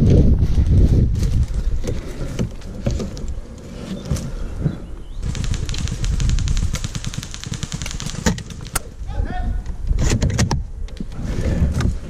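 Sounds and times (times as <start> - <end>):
airsoft gun firing full auto: 5.2 - 9.0
handling noise and clicks: 5.2 - 9.0.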